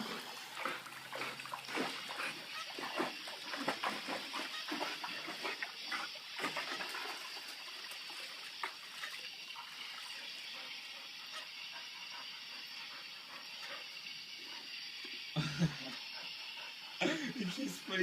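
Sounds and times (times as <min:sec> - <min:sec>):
small water splashes: 0:00.0 - 0:10.4
water running steadily: 0:00.0 - 0:18.0.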